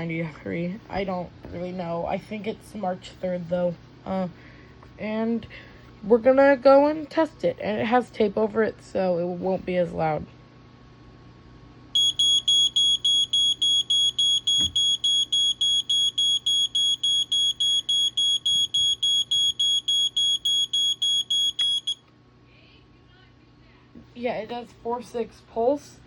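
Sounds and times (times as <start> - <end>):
smoke alarm beeping: 12.0 - 22.0.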